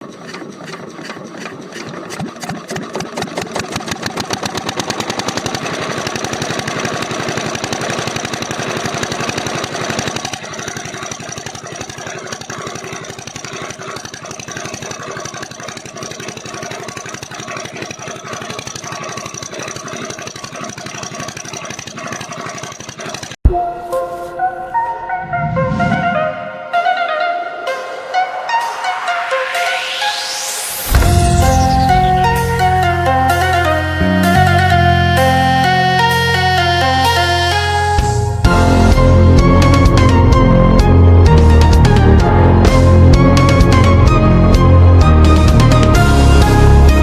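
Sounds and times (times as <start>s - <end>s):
diesel engine knocking: 0.0s - 23.4s.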